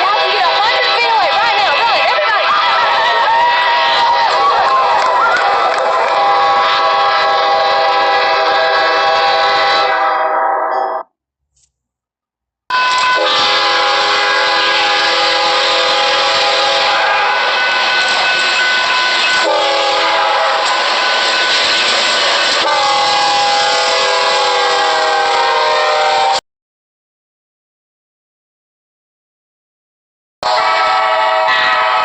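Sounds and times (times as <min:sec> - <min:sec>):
locomotive multi-chime air horn: 0:00.0 - 0:11.0, 0:12.7 - 0:26.4, 0:30.4 - 0:32.0.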